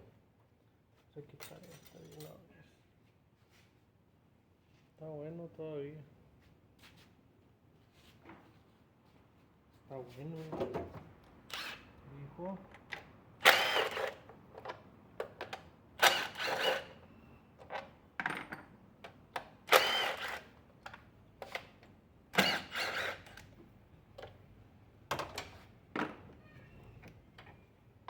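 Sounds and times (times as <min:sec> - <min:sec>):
power gun whining: 0:13.4 - 0:14.2, 0:19.7 - 0:20.4, 0:22.4 - 0:23.4.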